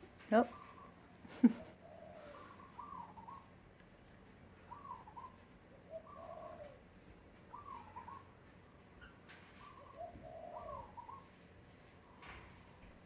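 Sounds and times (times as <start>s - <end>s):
bird cooing: 0.4s - 3.6s, 4.6s - 6.9s, 7.5s - 8.4s, 9.5s - 11.4s.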